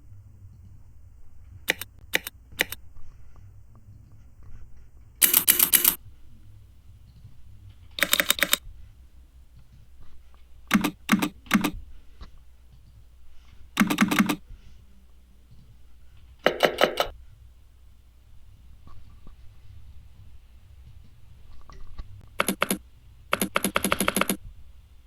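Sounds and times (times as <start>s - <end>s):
mechanical keyboard keystroke clicks: 1.7s - 2.8s, 5.2s - 6.0s, 8.0s - 8.6s, 10.7s - 11.8s, 13.8s - 14.4s, 22.4s - 24.4s.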